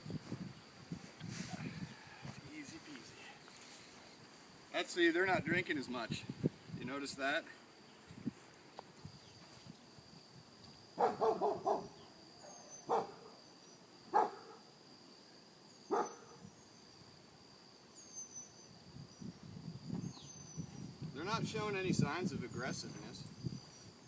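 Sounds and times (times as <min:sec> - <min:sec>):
dog barking: 0:11.0 - 0:13.4, 0:14.1 - 0:14.6, 0:15.9 - 0:16.4.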